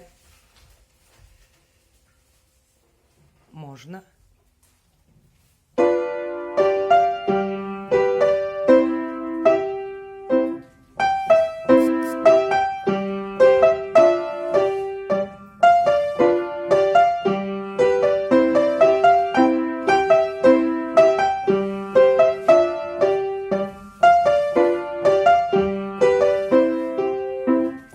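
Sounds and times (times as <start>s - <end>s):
piano playing short chords: 5.8s - 27.9s.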